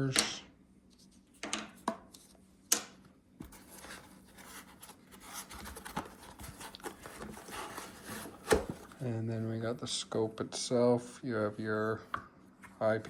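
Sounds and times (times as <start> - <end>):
packaging rustling: 3.5 - 9.0.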